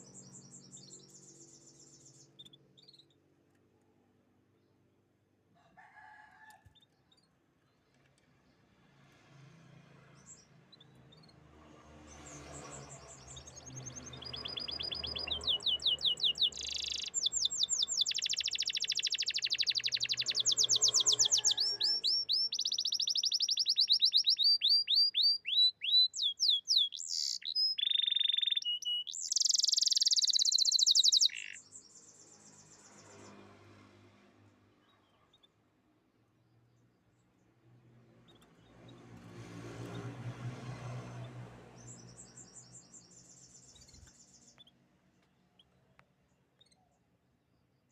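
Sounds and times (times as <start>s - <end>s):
canary singing trills: 12.2s - 33.2s.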